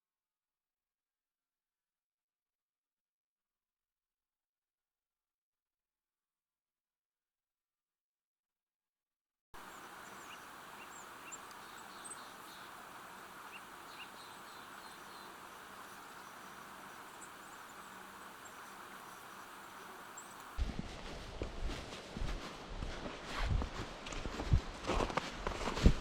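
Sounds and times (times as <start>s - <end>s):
songbirds high call notes: 9.6s - 20.6s
steady outdoor hiss: 9.6s - 24.8s.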